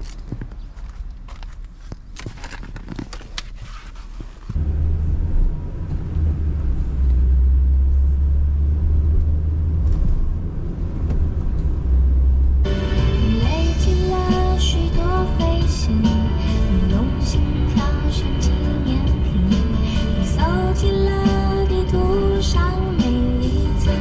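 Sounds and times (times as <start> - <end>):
car engine rumbling: 0.0 - 24.0
music: 12.7 - 24.0.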